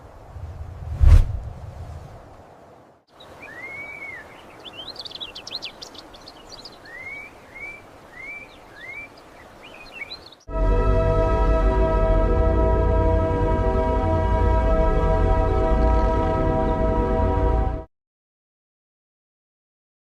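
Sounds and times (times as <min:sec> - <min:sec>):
low whoosh: 0:00.3 - 0:02.2
birds singing: 0:03.1 - 0:10.5.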